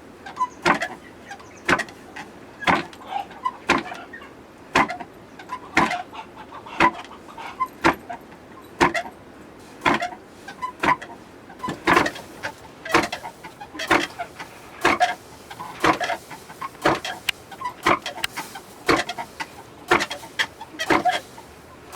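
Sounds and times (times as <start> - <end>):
hand mill knocking: 12.9 - 21.4.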